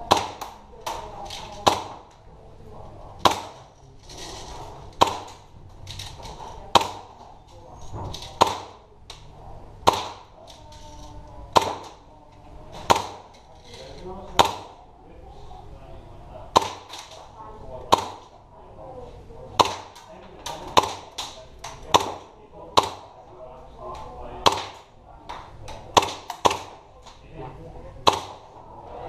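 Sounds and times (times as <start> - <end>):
airsoft pistol shots: 0.1 - 0.6, 3.2 - 3.6, 5.0 - 5.4, 8.4 - 8.8, 9.8 - 10.3, 11.5 - 12.0, 12.8 - 13.3, 14.3 - 14.8, 16.5 - 17.0, 17.9 - 18.3, 19.6 - 23.1, 24.4 - 24.9, 25.9 - 26.8, 28.0 - 28.5.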